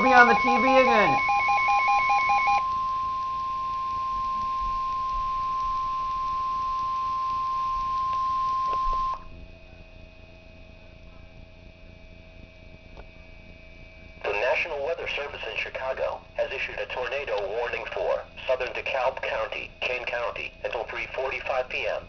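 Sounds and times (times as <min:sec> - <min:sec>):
pulsing beep: 0:00.0 - 0:09.2
steady high alarm tone: 0:00.0 - 0:09.3
faint hum: 0:00.0 - 0:22.0.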